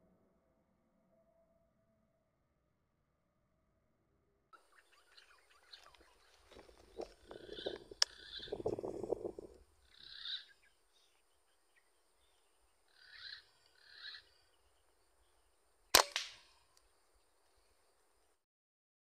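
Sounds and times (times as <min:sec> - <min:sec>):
faint bird calls: 0:04.6 - 0:15.7
air rifle shot: 0:15.9 - 0:16.6.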